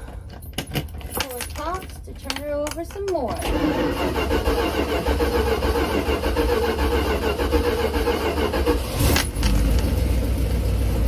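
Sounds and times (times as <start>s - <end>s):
engine cranking and starting: 3.3s - 11.0s.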